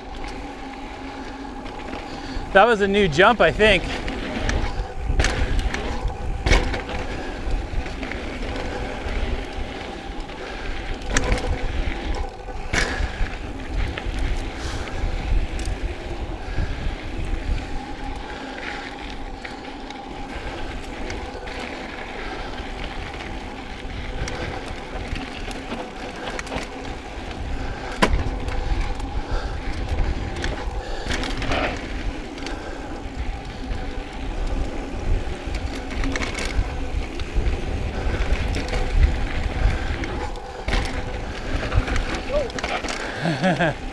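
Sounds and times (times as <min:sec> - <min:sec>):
bike tyres on dirt and gravel: 0:00.0 - 0:43.9
wind rumble: 0:00.0 - 0:43.9
bike knocks and rattles: 0:03.8 - 0:08.9, 0:11.0 - 0:16.7, 0:24.2 - 0:32.0, 0:35.5 - 0:43.9.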